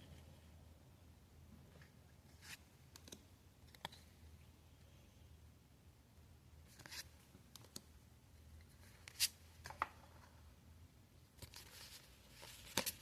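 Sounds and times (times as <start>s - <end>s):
trading cards rustling: 11.4s - 13.0s.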